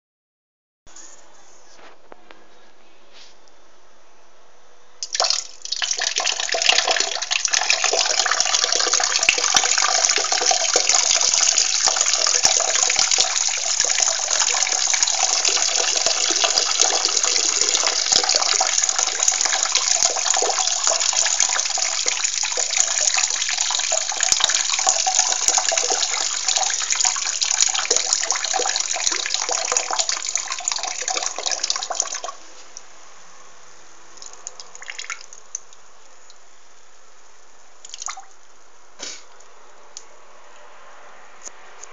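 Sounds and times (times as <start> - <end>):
person urinating into water: 5.0 - 32.4, 37.8 - 38.3.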